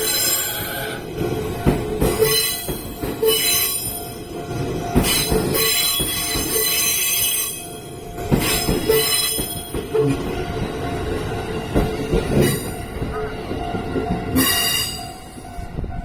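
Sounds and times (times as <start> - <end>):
train wheels squealing: 0.0 - 1.0, 2.0 - 4.1, 5.0 - 7.6, 8.3 - 10.1
electric train rumbling past: 0.0 - 16.0
level crossing alarm ringing: 0.0 - 16.0.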